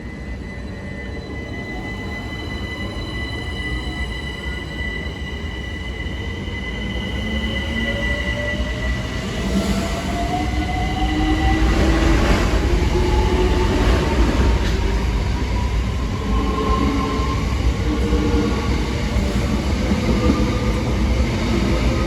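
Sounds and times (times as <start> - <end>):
train rumble: 7.6 - 22.0.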